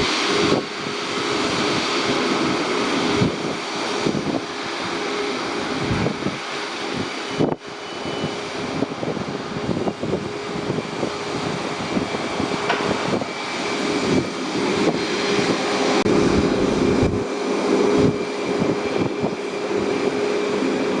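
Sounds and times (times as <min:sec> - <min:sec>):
jet turbines whining: 0:00.0 - 0:21.0
wind gusting on microphone: 0:00.0 - 0:21.0
low rumble: 0:15.5 - 0:17.3.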